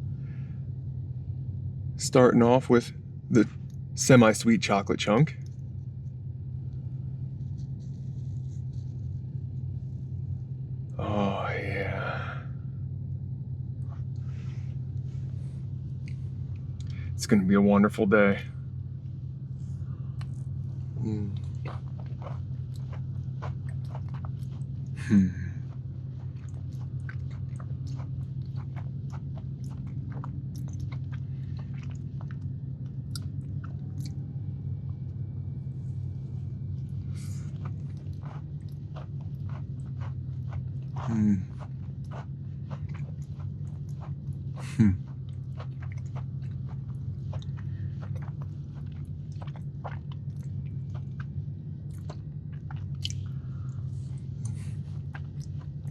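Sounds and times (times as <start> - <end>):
steady low hum: 0.0 - 55.9
close-up chewing mouth clicks: 15.9 - 17.0, 20.1 - 35.2, 36.1 - 55.9.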